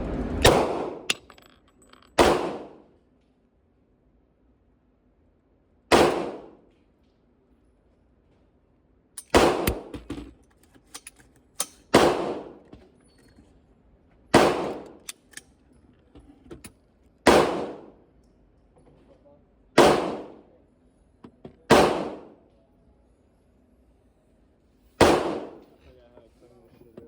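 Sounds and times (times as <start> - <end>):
loud gunshots with echo: 0.4 - 1.1, 2.2 - 2.8, 5.9 - 6.6, 9.3 - 9.9, 12.0 - 12.6, 14.4 - 14.9, 17.3 - 18.0, 19.8 - 20.4, 21.7 - 22.4, 25.0 - 25.6.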